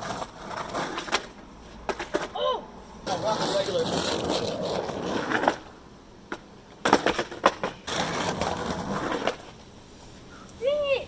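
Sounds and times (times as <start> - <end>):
skateboard wheels rolling on pavement: 0.0 - 11.0
skateboard wooden clacks: 6.3 - 9.5.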